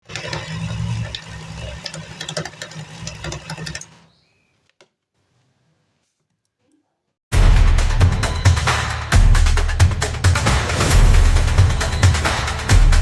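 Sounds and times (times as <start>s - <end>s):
mixer grinder motor humming: 0.0s - 4.0s.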